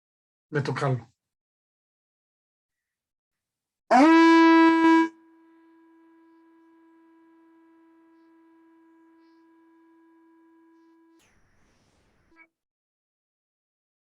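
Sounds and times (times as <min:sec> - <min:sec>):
conch shell trumpet blast: 0:03.9 - 0:11.2
faint steady tone: 0:04.8 - 0:12.5.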